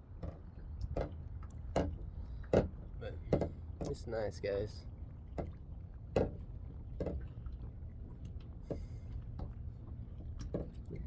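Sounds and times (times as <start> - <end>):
water lapping against kayak hull: 4.8 - 11.0.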